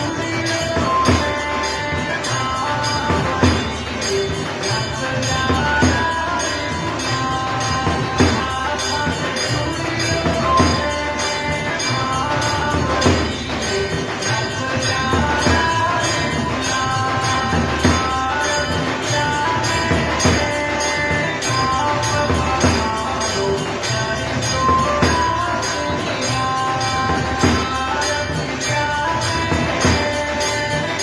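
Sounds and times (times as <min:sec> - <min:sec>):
heavy drum beat: 0:00.0 - 0:31.0
steady percussion: 0:00.0 - 0:31.0.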